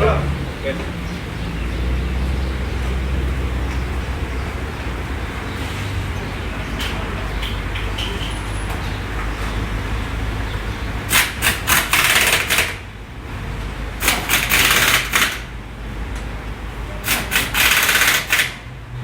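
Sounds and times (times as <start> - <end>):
pneumatic impact wrench rattling: 11.1 - 12.9, 14.0 - 15.6, 17.0 - 18.7.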